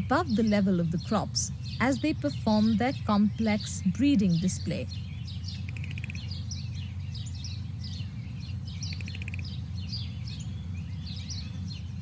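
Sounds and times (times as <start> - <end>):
wild birds chirping and calling: 0.0 - 12.0.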